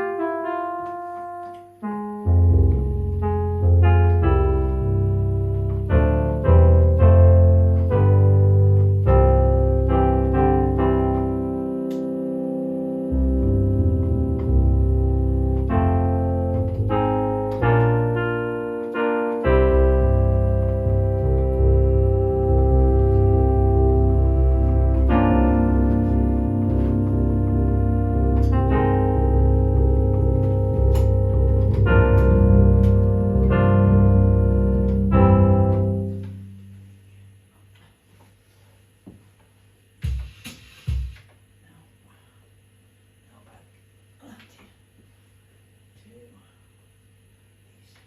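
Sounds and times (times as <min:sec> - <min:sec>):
electronic organ chords: 0:00.0 - 0:37.5
steady bass line: 0:02.0 - 0:37.5.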